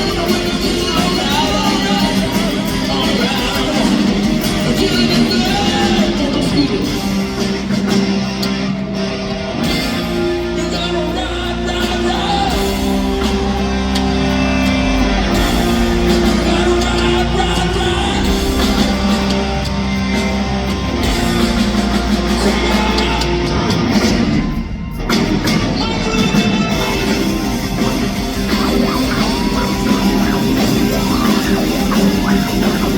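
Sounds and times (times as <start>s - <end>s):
person singing: 0.0s - 7.4s, 10.3s - 19.8s, 21.7s - 24.4s
bass guitar: 0.0s - 32.9s
electric guitar: 0.0s - 32.9s.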